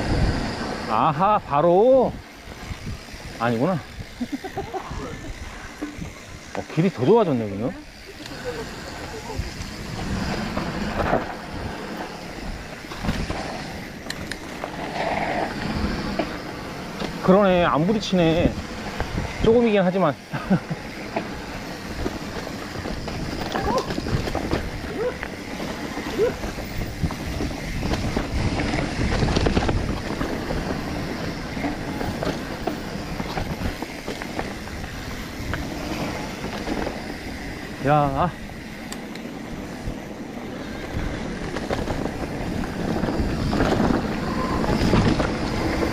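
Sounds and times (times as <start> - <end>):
wind on microphone: 0.0 - 0.9, 2.1 - 6.8, 17.5 - 19.6, 21.4 - 45.9
bike tyre trail noise: 0.0 - 45.9
bike rattling clicks: 2.2 - 7.2, 7.8 - 45.9.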